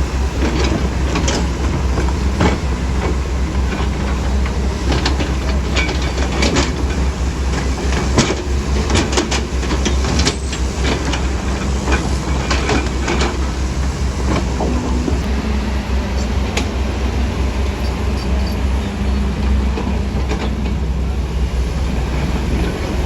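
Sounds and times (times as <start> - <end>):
low diesel engine rumble: 0.0 - 23.0
metal clanks and rattles: 0.4 - 15.3.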